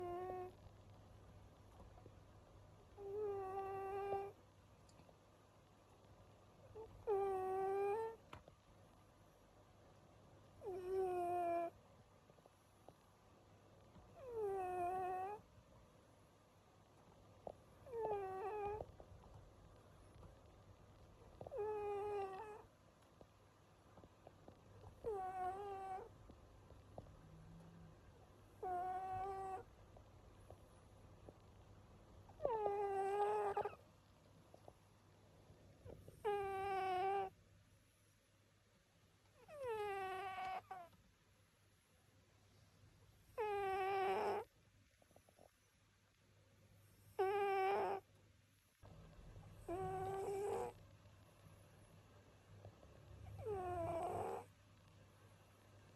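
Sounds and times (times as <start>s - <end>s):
cat snoring squeakily: 0.0s - 0.6s, 3.0s - 4.4s, 6.7s - 8.2s, 10.6s - 11.8s, 14.2s - 15.4s, 17.8s - 18.9s, 21.4s - 22.6s, 25.0s - 26.1s, 28.5s - 29.7s, 32.3s - 33.8s, 35.9s - 37.4s, 39.4s - 40.9s, 43.4s - 44.5s, 47.0s - 48.1s, 49.6s - 50.8s, 53.2s - 54.5s.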